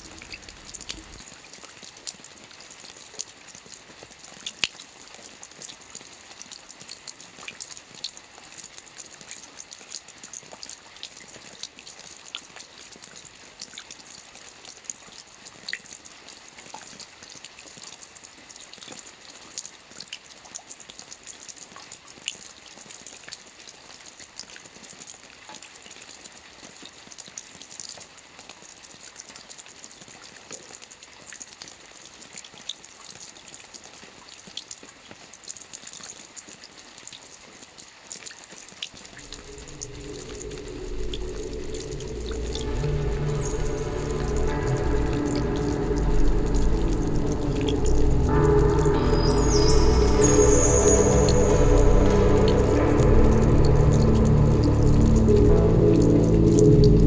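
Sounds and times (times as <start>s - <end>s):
rainfall hiss: 0.0s - 10.8s, 38.9s - 57.0s
raindrops ticking on a surface: 0.0s - 42.6s.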